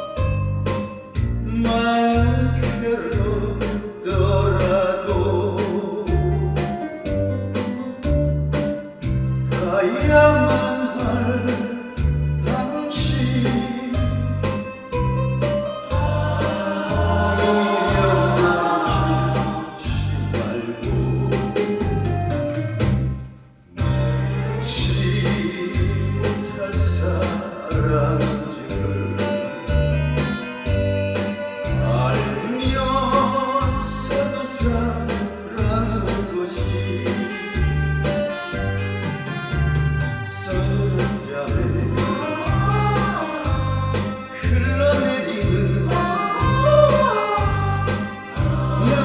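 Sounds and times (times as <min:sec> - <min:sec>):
music with steady bass beat: 0:00.0 - 0:49.0
group of people singing: 0:15.9 - 0:21.7, 0:45.9 - 0:49.0.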